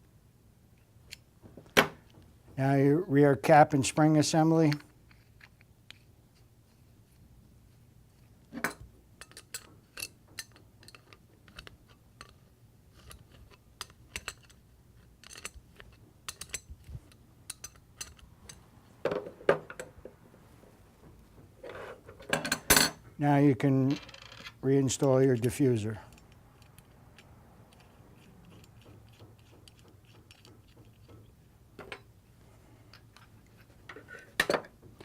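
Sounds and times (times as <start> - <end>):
small metal parts clicking: 13.0 - 18.6.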